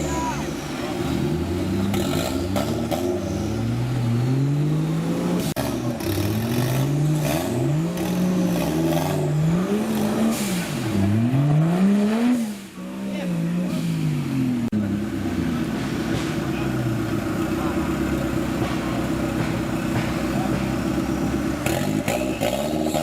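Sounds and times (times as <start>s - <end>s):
engine revving: 0.0s - 23.0s
sharp knocks and clatters: 18.5s - 22.9s.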